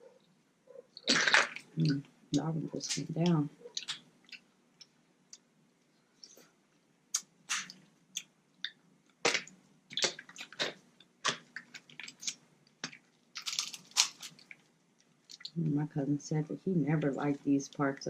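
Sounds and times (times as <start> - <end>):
wet sucking and chewing: 7.1 - 15.6
crab shell cracking: 8.6 - 15.6.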